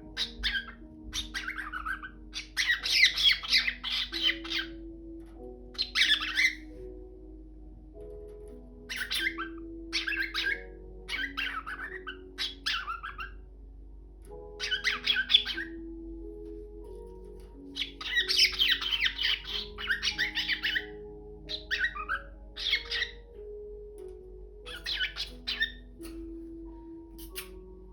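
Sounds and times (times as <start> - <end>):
cockatiel squawking: 0.0 - 4.9, 5.8 - 6.8, 8.9 - 13.4, 14.6 - 15.9, 17.7 - 23.4, 24.6 - 26.3
soft slow background music: 0.0 - 27.9.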